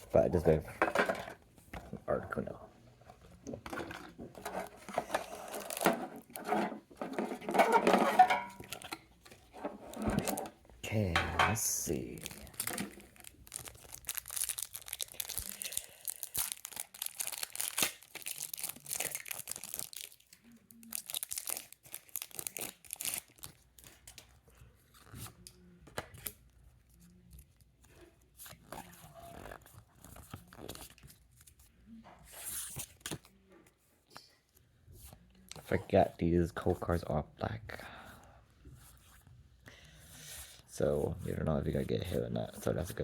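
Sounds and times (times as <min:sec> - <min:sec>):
foil wrapper tearing and crinkling: 0:05.2 - 0:06.4, 0:11.8 - 0:24.3.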